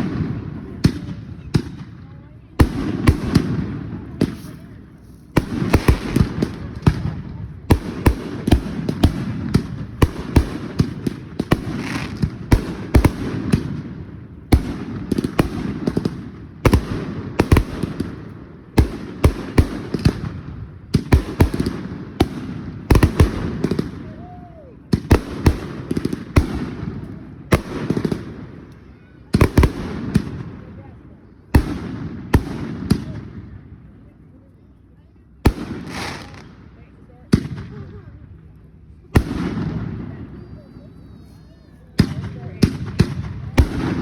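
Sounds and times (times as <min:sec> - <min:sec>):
fireworks bangs with echo: 0:00.0 - 0:33.9, 0:35.4 - 0:38.1, 0:39.0 - 0:41.3, 0:41.9 - 0:44.0.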